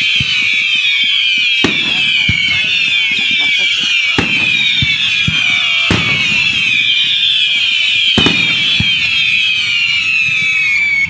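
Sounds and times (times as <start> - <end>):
fireworks whistling: 0.0 - 11.0
firework bang: 1.6 - 9.5.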